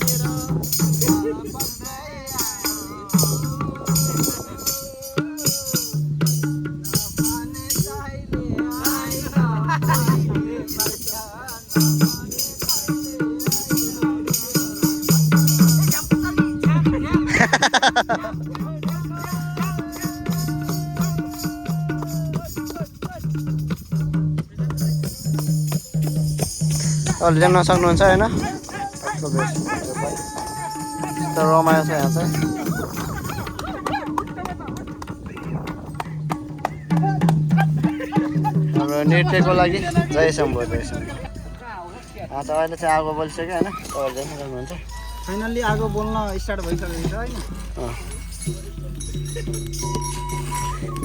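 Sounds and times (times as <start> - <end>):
rhythmic high jingle: 0.0 - 8.0, 8.7 - 41.0, 44.8 - 51.0
melody over bass notes: 48.4 - 51.0.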